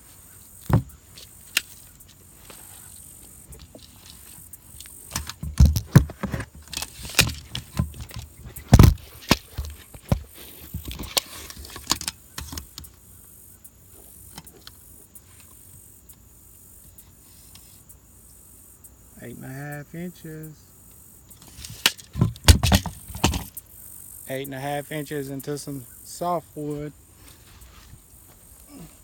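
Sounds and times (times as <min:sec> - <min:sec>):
wooden knocks and clatters: 0:05.1 - 0:12.6, 0:21.9 - 0:23.6.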